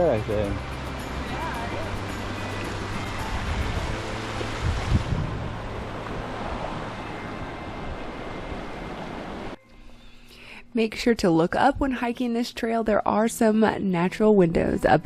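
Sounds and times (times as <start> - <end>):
rushing stream water: 0.0 - 9.6
wind buffeting microphone: 2.3 - 9.6.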